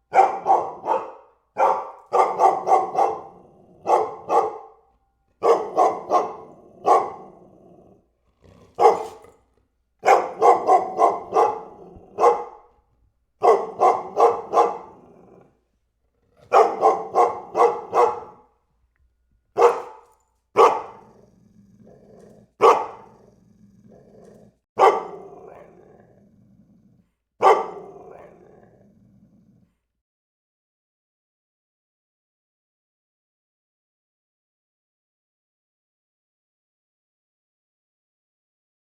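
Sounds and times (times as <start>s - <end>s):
dog barking: 0.1s - 7.7s, 8.6s - 9.4s, 10.0s - 15.5s, 16.4s - 18.6s, 19.5s - 21.3s, 22.1s - 23.3s, 24.8s - 26.0s, 27.4s - 28.7s
dog growling low: 3.2s - 4.3s, 5.6s - 9.8s, 10.6s - 12.9s, 13.9s - 17.6s, 20.8s - 30.0s.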